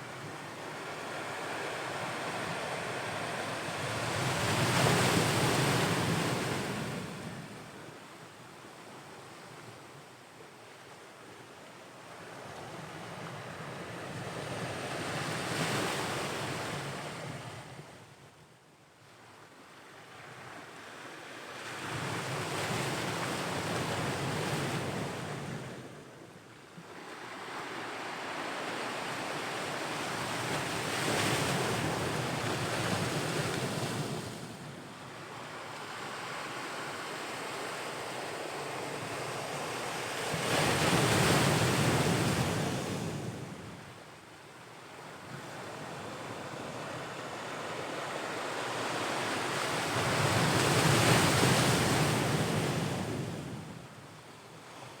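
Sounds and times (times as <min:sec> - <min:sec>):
ocean waves breaking on shore: 0:44.9 - 0:53.7.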